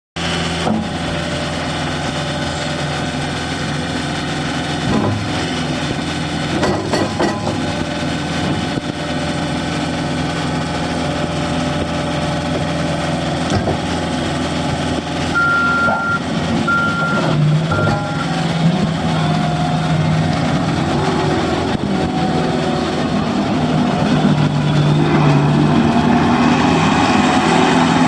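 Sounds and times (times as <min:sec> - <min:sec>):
diesel engine idling: 0:00.2 - 0:28.0
knocks and clanks: 0:04.8 - 0:05.4, 0:06.5 - 0:07.8, 0:13.5 - 0:13.9.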